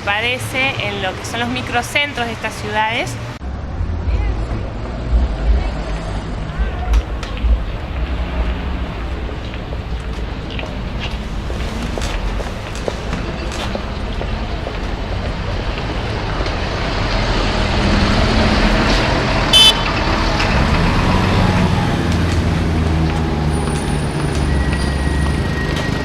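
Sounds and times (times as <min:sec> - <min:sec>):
city street traffic: 0:00.0 - 0:26.0
heavy vehicle passing: 0:02.3 - 0:26.0
brief high-pitched beep: 0:19.6 - 0:19.9.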